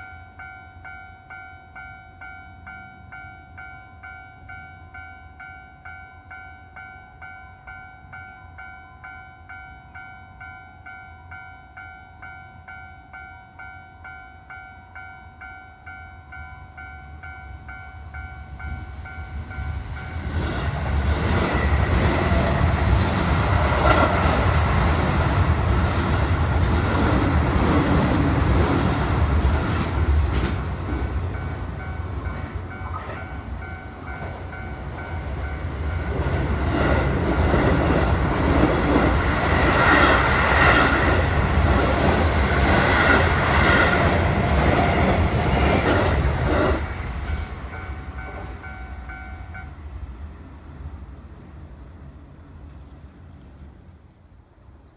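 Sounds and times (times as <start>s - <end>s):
electric train passing: 0.0s - 53.9s
train wheels clacking: 18.6s - 49.2s.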